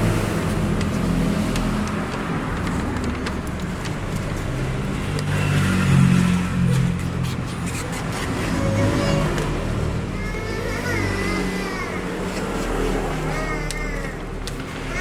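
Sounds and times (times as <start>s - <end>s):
vehicle engine running: 0.0s - 10.3s.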